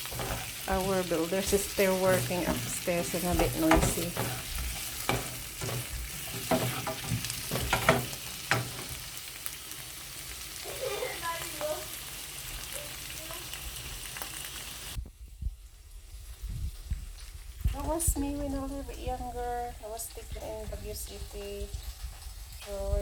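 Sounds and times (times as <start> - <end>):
spatula scraping a pan: 0.0 - 9.2
vegetables sizzling in a pan: 0.0 - 23.0.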